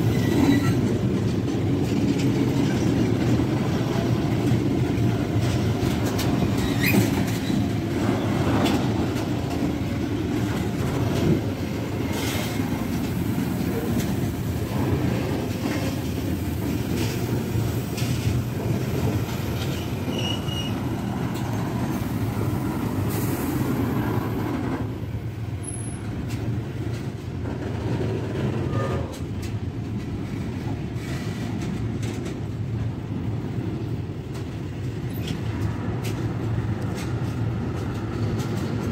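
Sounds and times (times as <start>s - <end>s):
train rumbling past: 0.0s - 38.9s
wheel squeals: 19.6s - 20.8s.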